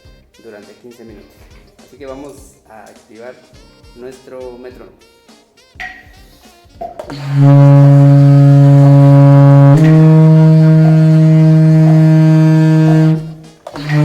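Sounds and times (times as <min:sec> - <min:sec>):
saxophone playing low sustained notes: 0:07.0 - 0:14.0.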